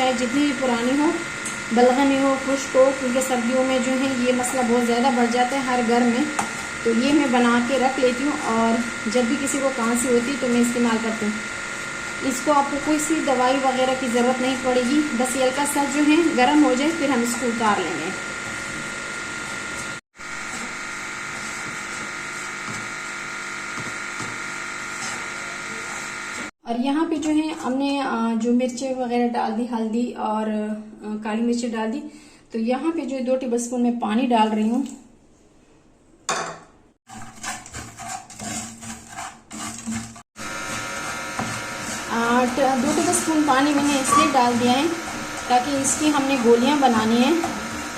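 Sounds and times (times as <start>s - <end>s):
machine hum with high whine: 0.0s - 26.5s, 40.4s - 47.9s
spoon scraping a pan: 37.1s - 40.8s.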